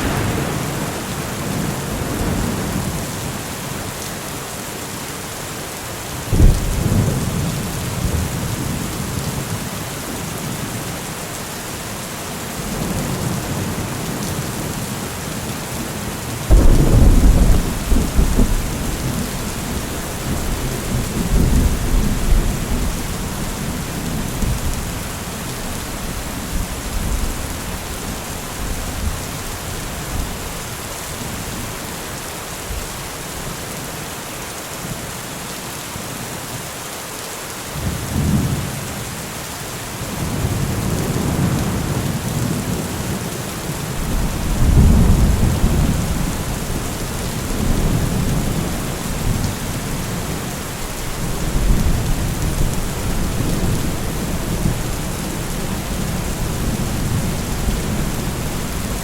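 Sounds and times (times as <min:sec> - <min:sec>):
thunder rolling: 0:00.0 - 0:03.3, 0:16.5 - 0:25.0, 0:44.0 - 0:50.4
heavy rain: 0:00.0 - 0:59.0.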